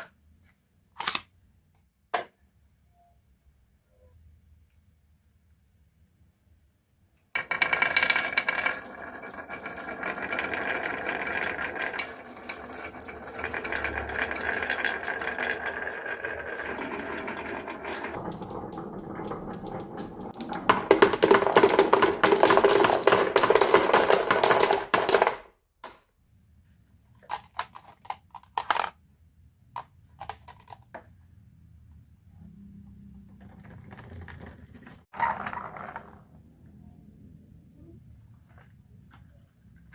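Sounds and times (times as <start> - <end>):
marbles clattering down wooden run: 7.4 - 26.0.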